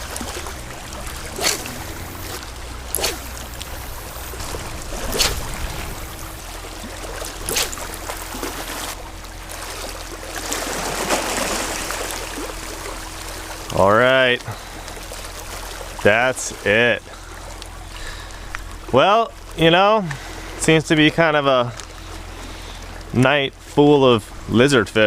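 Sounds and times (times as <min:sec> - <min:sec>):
water washing against shore: 0:00.0 - 0:13.7
faint steady hum: 0:00.0 - 0:25.0.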